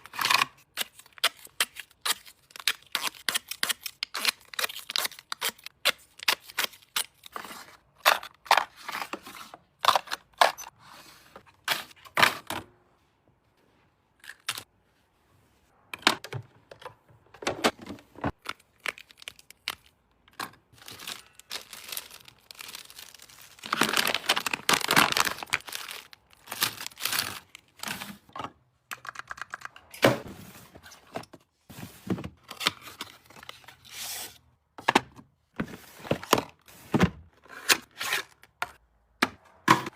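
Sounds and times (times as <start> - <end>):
packaging crinkling and tearing: 18.4 - 20.0, 20.8 - 27.8.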